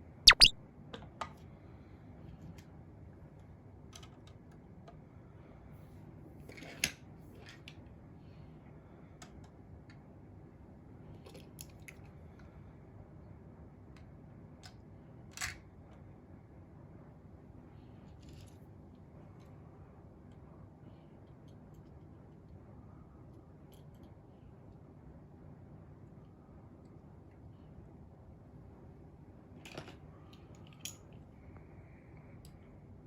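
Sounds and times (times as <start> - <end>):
loud sharp clicks: 0.3 - 0.6.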